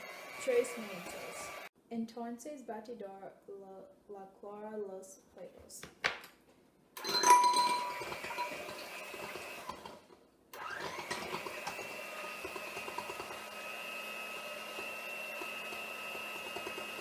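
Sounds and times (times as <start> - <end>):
electric mixer beating: 0.0 - 1.7, 7.0 - 10.0, 10.6 - 17.0.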